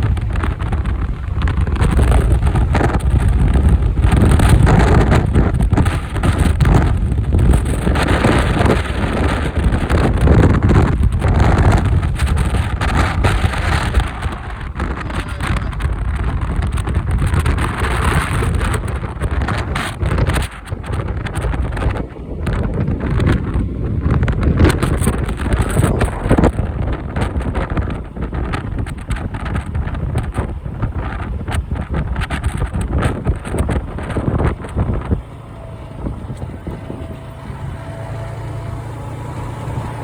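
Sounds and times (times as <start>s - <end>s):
motorcycle running: 0.0s - 40.0s
road noise: 0.0s - 40.0s
strong wind buffeting microphone: 0.0s - 40.0s.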